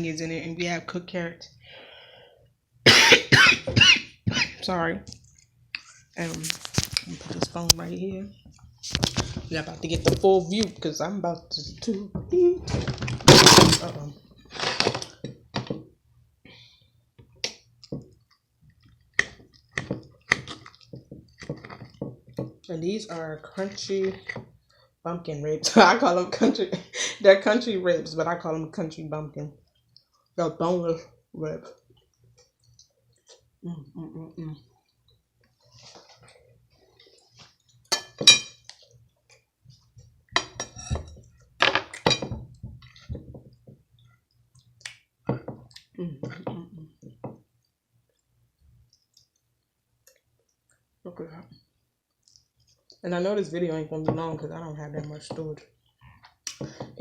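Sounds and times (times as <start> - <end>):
objects clicking and knocking: 12.6 - 14.0
cutlery clinking on plate: 37.9 - 38.6.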